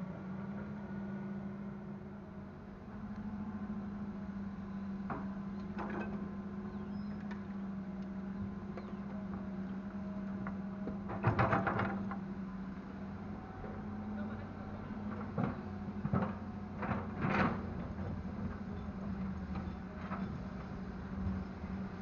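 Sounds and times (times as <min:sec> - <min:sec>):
diesel engine humming: 0:00.0 - 0:11.2, 0:12.0 - 0:22.0
excavator bucket clattering: 0:11.0 - 0:12.1.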